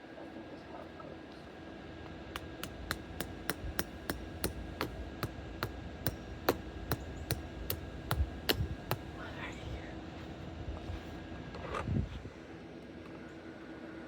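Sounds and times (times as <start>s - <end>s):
hammer driving a stake: 2.4s - 9.2s.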